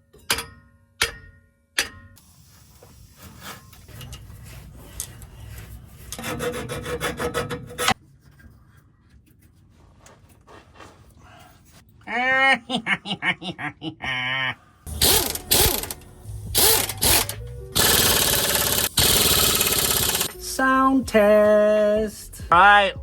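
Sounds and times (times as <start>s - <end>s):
hand tool scraping rubber: 3.2s - 11.2s.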